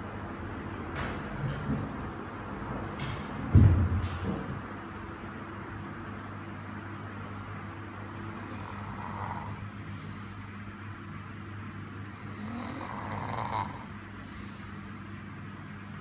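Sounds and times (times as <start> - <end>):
steady low hum: 0.0 - 16.0
person snoring: 8.0 - 10.4, 12.1 - 14.6.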